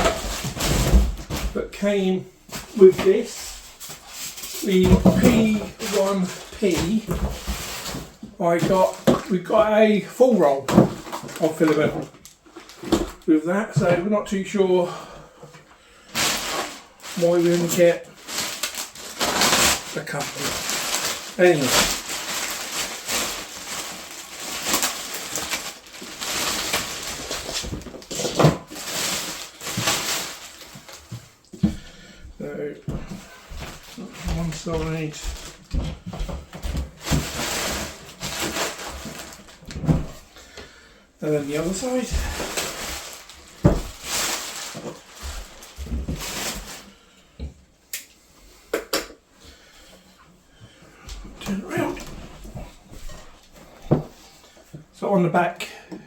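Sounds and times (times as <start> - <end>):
packaging rustling: 2.5 - 9.3, 10.6 - 13.8, 16.0 - 31.9, 32.9 - 40.7, 41.4 - 47.0.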